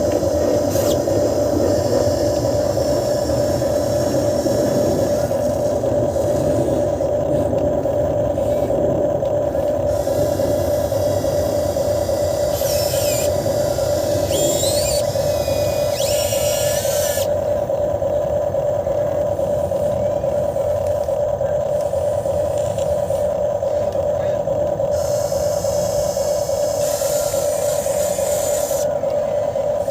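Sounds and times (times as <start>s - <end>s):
toy excavator motor whine: 0.0s - 29.9s
short high-pitched sliding whines: 9.9s - 17.3s, 24.9s - 29.0s.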